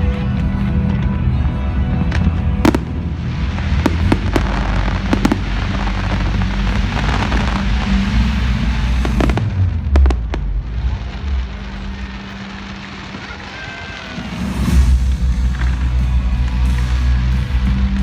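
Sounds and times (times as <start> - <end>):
fireworks crackling and banging: 0.0 - 18.0
heavy low rumble: 0.8 - 13.2.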